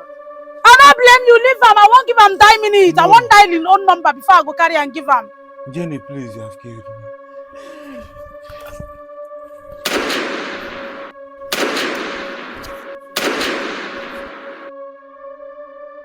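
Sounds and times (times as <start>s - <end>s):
droning music: 0.0s - 16.0s
gunshots: 9.8s - 14.7s.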